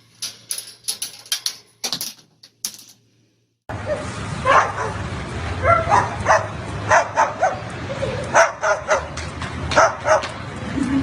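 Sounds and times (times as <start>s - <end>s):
dog yapping: 9.8s - 10.3s.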